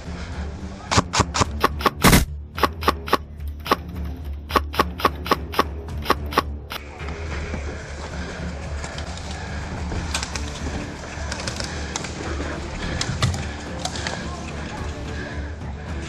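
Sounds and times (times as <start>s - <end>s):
airsoft rifle shots: 0.9s - 3.9s, 4.5s - 6.5s.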